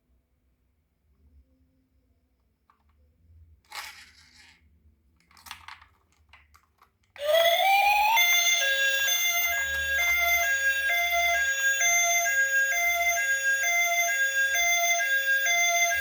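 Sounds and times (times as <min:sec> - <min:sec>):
toy siren-like rising tone: 0:07.2 - 0:16.0.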